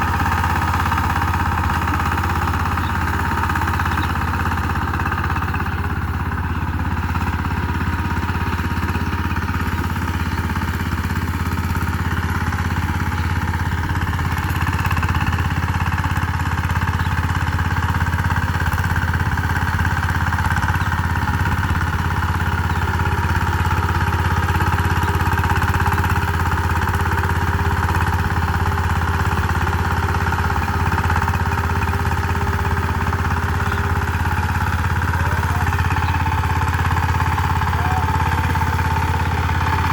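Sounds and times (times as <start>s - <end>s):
power tiller engine running: 0.0s - 39.9s.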